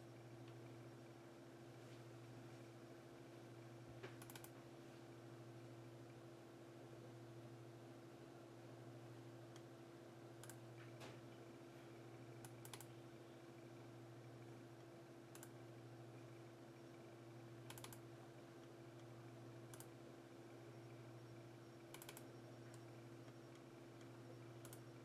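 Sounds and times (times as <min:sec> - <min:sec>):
faint low hum: 0:00.0 - 0:25.0
computer key or mouse clicks: 0:12.4 - 0:12.9, 0:17.7 - 0:18.0, 0:21.9 - 0:22.3.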